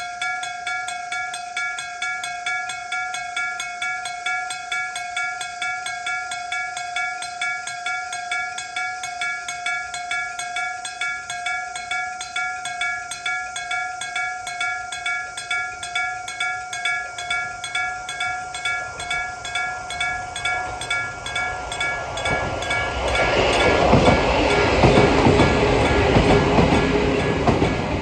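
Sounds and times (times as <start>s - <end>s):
train approaching: 11.0s - 28.0s
level crossing alarm dinging: 14.1s - 28.0s.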